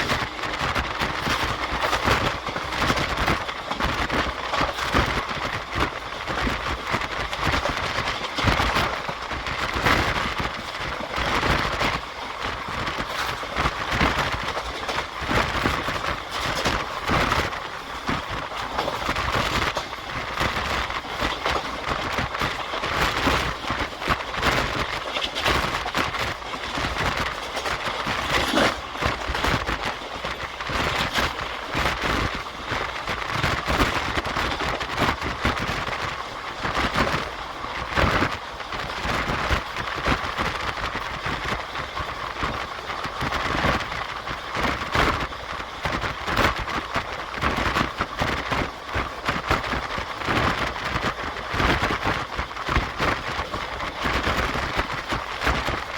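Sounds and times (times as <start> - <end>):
train running and wind noise: 0.0 - 55.9
wheels clicking and rattling on track: 0.0 - 55.9.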